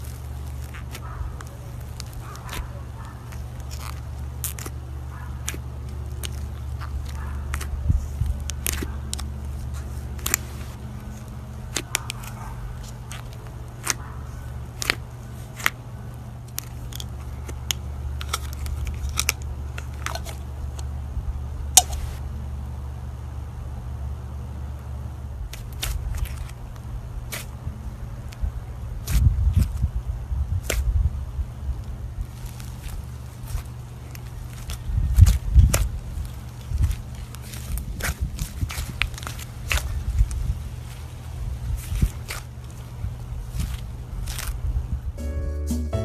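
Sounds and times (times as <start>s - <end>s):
slime popping and crackling: 0.0s - 4.8s, 5.4s - 9.5s, 10.1s - 14.1s, 14.7s - 15.8s, 32.2s - 40.4s.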